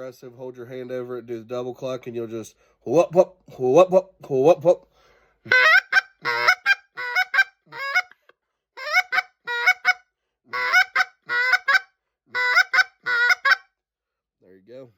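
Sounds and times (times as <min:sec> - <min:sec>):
goose call honks: 0:05.5 - 0:08.2, 0:08.8 - 0:13.6.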